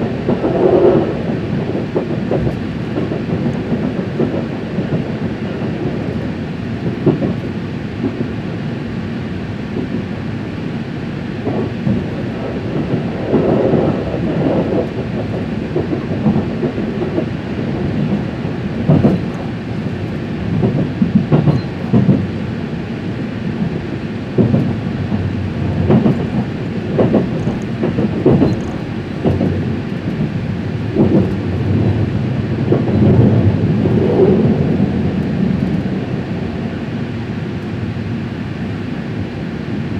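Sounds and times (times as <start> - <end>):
wheels knocking over rail joints: 0.0 - 7.4, 11.4 - 22.4, 23.6 - 35.6
train rumbling past: 0.0 - 39.9.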